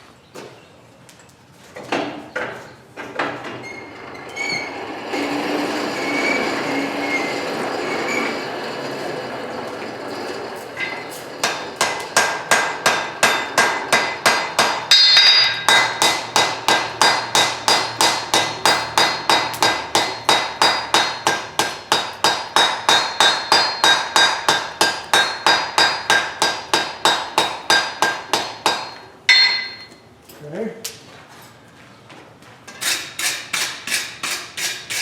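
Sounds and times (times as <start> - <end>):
hammer striking steel on anvil: 10.8 - 30.0, 32.8 - 35.0.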